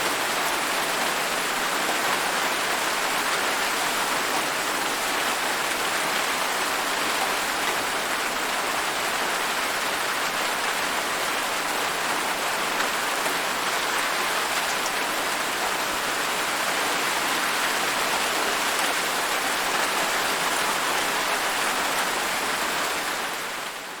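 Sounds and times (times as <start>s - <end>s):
steady rain falling: 0.0s - 24.0s.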